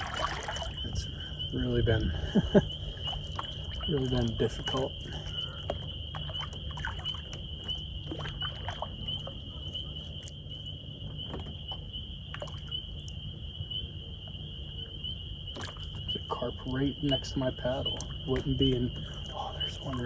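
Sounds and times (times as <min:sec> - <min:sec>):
wind rumble on microphone: 0:00.0 - 0:10.4
kayak paddle splashing water: 0:00.0 - 0:12.8, 0:15.5 - 0:20.0.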